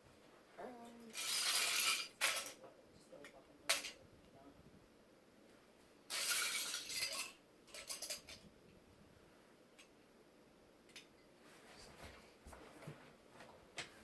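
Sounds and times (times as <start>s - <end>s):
small hard pieces clattering: 1.1s - 2.6s, 6.1s - 8.4s.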